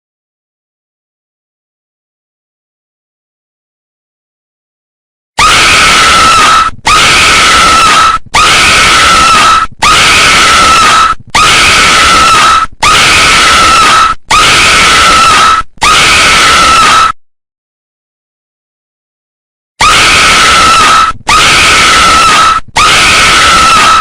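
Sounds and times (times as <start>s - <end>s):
harsh horror scream: 5.4s - 17.2s, 19.8s - 24.0s.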